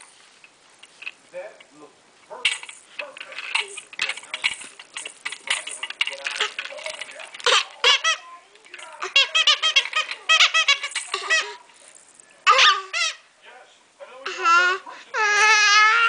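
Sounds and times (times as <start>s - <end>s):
baby squealing: 9.0s - 11.6s, 12.5s - 13.2s, 14.3s - 16.0s.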